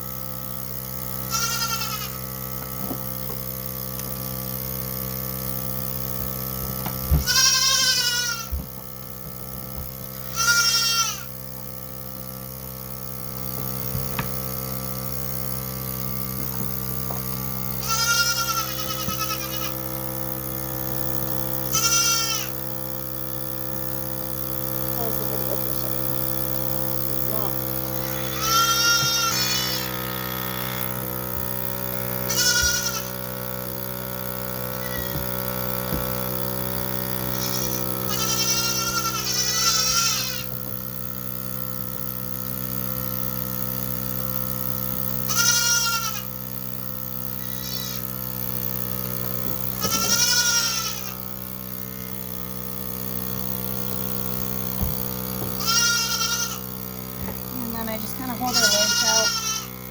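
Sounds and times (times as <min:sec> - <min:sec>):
milking machine humming: 0:00.0 - 0:59.9
goat bleating: 0:01.3 - 0:02.3, 0:07.2 - 0:08.6, 0:10.2 - 0:11.4, 0:17.8 - 0:19.8, 0:21.7 - 0:22.6, 0:28.0 - 0:30.8, 0:32.2 - 0:33.3, 0:34.7 - 0:35.4, 0:37.3 - 0:40.5, 0:45.3 - 0:46.4, 0:47.4 - 0:48.1, 0:49.7 - 0:51.2, 0:55.5 - 0:56.7, 0:57.3 - 0:59.9.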